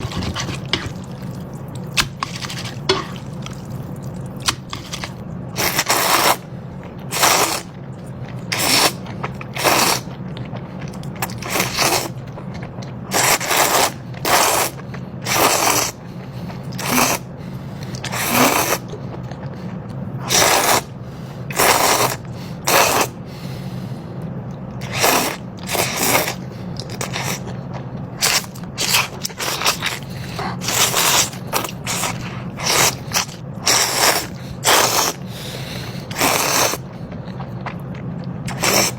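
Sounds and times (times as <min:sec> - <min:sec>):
noodles being slurped: 0:00.0 - 0:06.5, 0:07.1 - 0:10.2, 0:10.9 - 0:16.1, 0:16.7 - 0:17.2, 0:17.9 - 0:18.9, 0:20.2 - 0:20.9, 0:21.5 - 0:23.1, 0:24.8 - 0:27.5, 0:28.2 - 0:37.6, 0:38.5 - 0:38.9
chewing: 0:00.0 - 0:17.2, 0:24.8 - 0:35.2, 0:36.0 - 0:38.9
steady low hum: 0:00.0 - 0:38.9.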